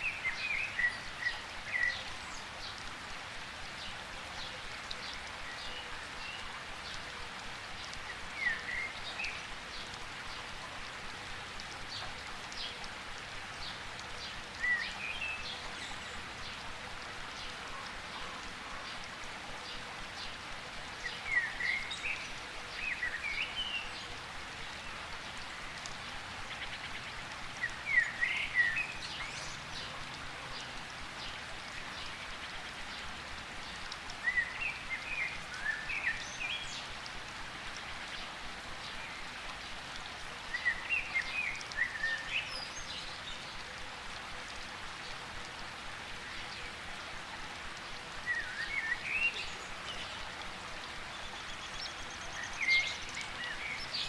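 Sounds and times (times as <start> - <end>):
steady rain falling: 0.0 - 54.0.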